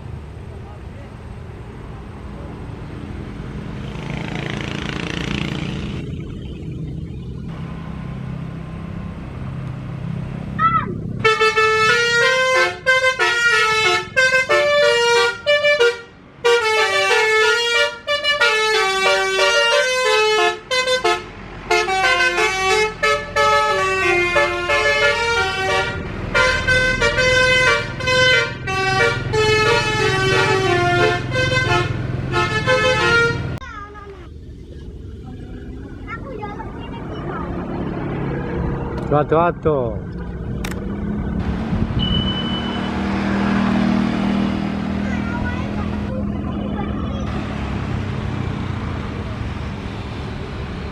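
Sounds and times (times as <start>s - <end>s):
bus engine rumble: 0.0s - 50.9s
multi-tone musical air horn: 11.2s - 33.5s.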